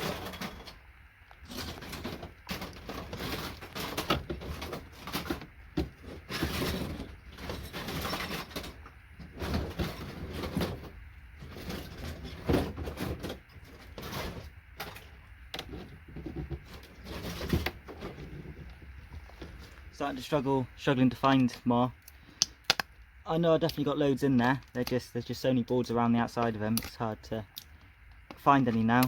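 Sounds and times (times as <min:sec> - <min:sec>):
hand tools knocking and scraping: 0:01.4 - 0:19.8.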